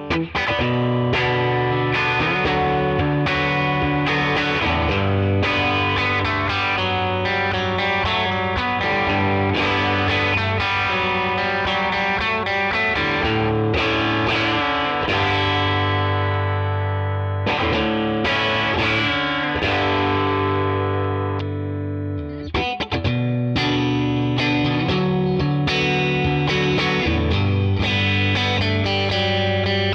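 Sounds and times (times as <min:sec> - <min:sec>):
distorted electric guitar: 0:00.0 - 0:29.9.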